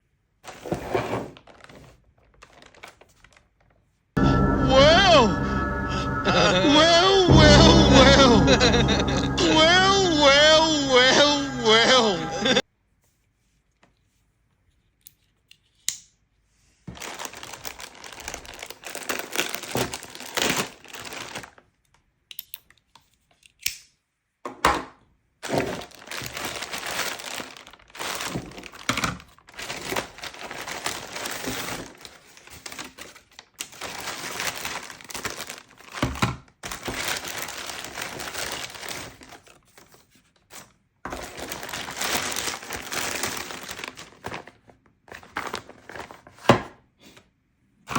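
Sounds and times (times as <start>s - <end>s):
packaging crinkling and rustling: 1.4s - 3.8s, 16.9s - 21.4s, 25.4s - 35.9s, 41.1s - 46.4s.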